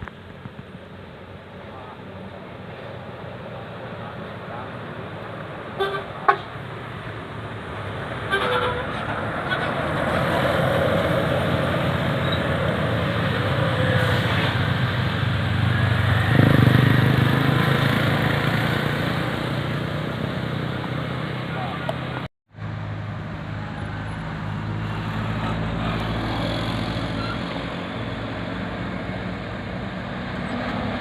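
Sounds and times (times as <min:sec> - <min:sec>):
bus driving past: 0:00.2 - 0:31.0
bus horn toots: 0:05.8 - 0:06.5, 0:08.3 - 0:09.9.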